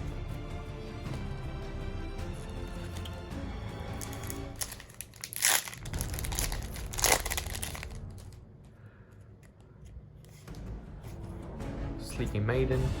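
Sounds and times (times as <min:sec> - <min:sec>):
background music: 0:00.0 - 0:13.0
foil wrapper crinkling: 0:03.9 - 0:08.4
loud foil rips: 0:04.0 - 0:08.4.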